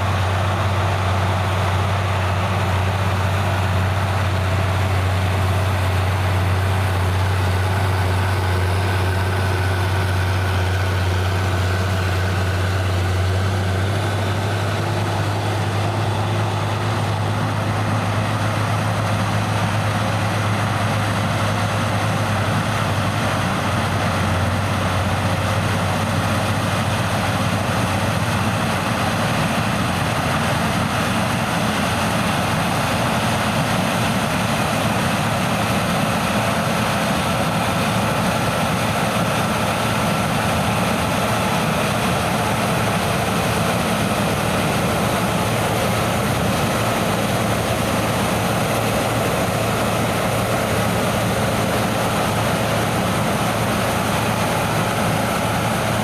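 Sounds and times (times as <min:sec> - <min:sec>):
combine harvester engine drone: 0:00.0 - 0:56.0.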